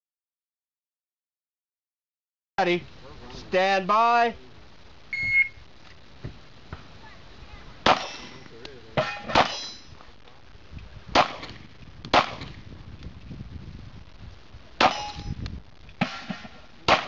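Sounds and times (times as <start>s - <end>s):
pistol shots: 7.8s - 8.4s, 11.1s - 12.6s
steel targets ringing: 9.0s - 9.9s, 14.8s - 15.3s.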